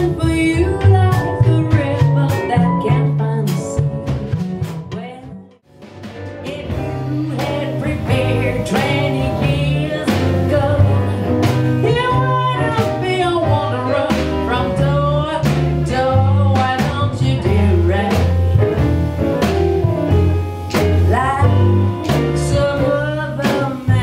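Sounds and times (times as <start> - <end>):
small jazz combo playing: 0.0 - 24.0
woman singing with vibrato: 6.4 - 18.4, 20.7 - 24.0.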